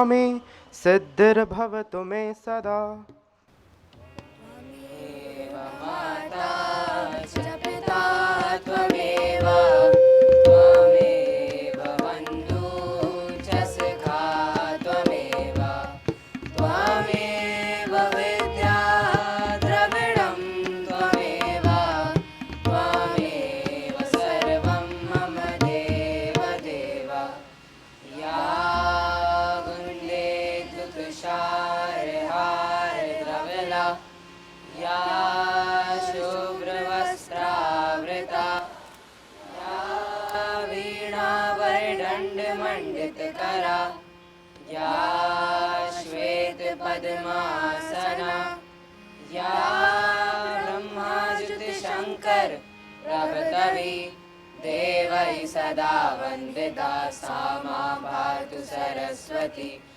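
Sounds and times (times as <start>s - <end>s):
tabla: 4.0s - 4.8s, 5.8s - 37.2s
person singing devotional prayer: 4.0s - 59.9s.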